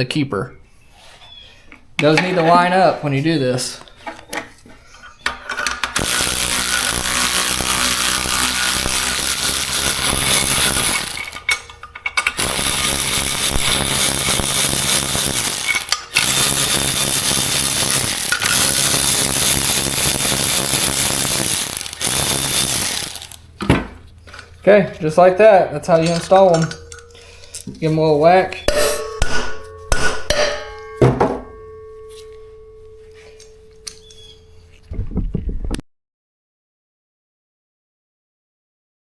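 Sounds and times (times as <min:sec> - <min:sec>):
power tool motor running: 0:05.8 - 0:23.6.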